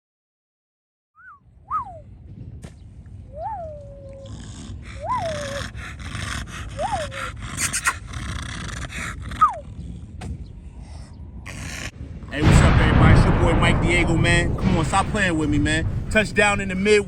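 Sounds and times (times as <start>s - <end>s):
crackling background hiss: 1.4s - 17.0s
puppy whining: 3.3s - 9.9s.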